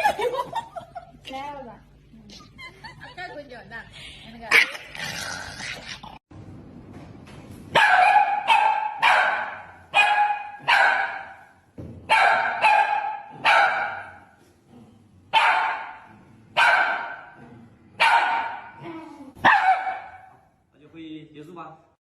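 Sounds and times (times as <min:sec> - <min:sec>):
dog barking: 0:07.8 - 0:11.5, 0:12.1 - 0:14.2, 0:15.3 - 0:17.4, 0:18.0 - 0:18.8, 0:19.4 - 0:20.5.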